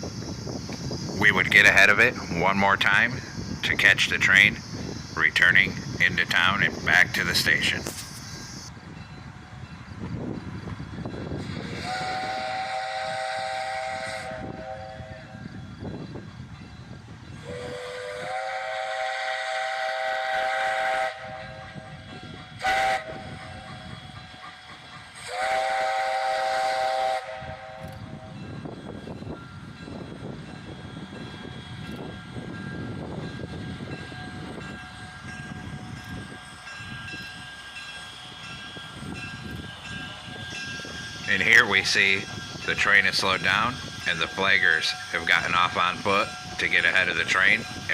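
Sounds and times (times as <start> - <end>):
rumble and clatter of passing train: 0.0 - 47.9
steam whistle blasts: 11.6 - 15.4, 17.4 - 22.0, 22.6 - 23.7, 25.2 - 28.4.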